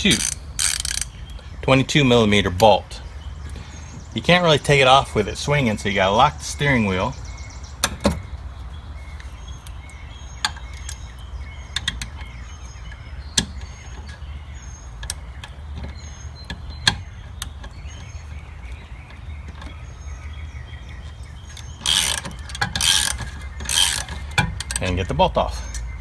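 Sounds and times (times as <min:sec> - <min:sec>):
hand tools clicking and knocking: 0:00.0 - 0:01.4, 0:21.0 - 0:26.0
small birds chirping: 0:00.0 - 0:26.0.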